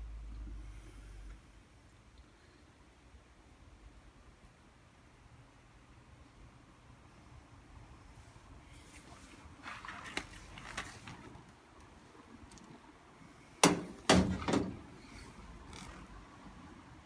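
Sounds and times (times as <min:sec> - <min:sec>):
loud knocks: 0:13.6 - 0:14.8.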